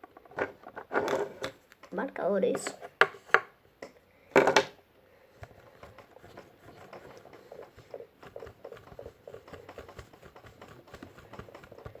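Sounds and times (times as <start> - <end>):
objects tapping and rubbing on desk: 5.4 - 12.0.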